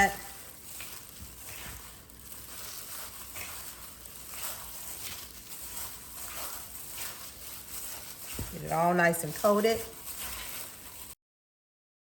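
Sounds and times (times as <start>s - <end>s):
chicken rustling in flour: 0.0s - 11.2s.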